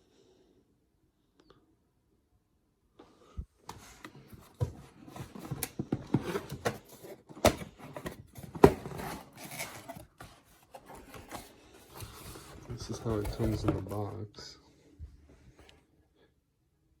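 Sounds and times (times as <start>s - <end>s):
packaging rustling: 4.3s - 14.0s.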